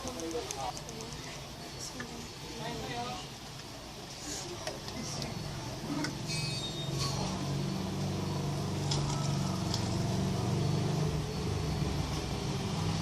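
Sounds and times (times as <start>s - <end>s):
low engine-like hum: 6.7s - 13.0s.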